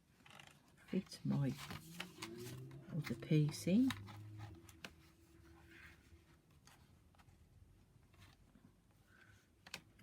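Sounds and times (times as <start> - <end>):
card rustling: 1.1 - 7.1.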